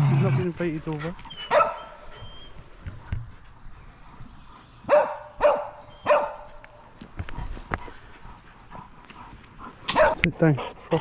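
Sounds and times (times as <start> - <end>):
dog barking: 1.5 - 2.0, 4.9 - 6.5, 9.9 - 10.2.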